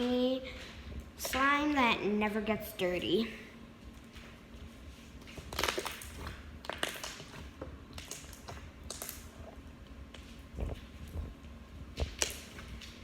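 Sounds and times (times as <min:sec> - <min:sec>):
slime clicking by hand: 0:05.4 - 0:09.4, 0:11.9 - 0:13.0.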